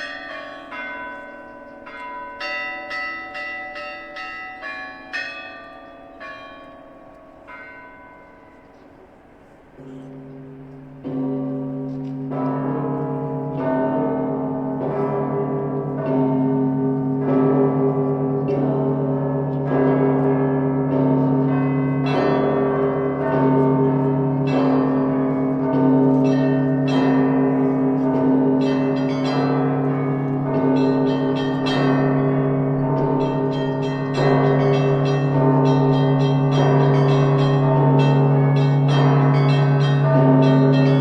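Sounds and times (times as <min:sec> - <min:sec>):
deep bell humming: 0:25.6 - 0:41.0
higher brighter bells ringing: 0:28.6 - 0:41.0.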